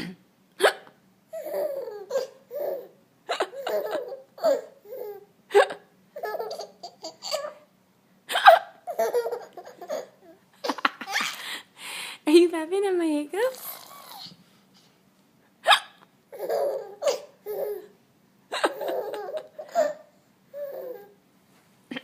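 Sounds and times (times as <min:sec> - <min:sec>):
child giggling: 0:01.4 - 0:07.6, 0:08.3 - 0:11.5, 0:18.5 - 0:20.1
child hiccuping: 0:15.6 - 0:16.0.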